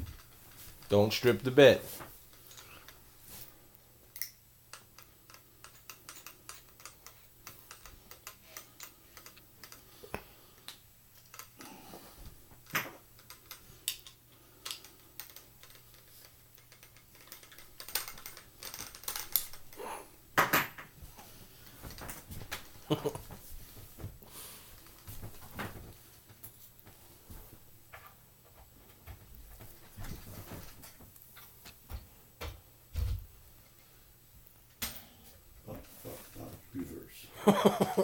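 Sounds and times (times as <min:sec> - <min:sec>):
screwdriver clicking and tapping: 0:04.2 - 0:09.8.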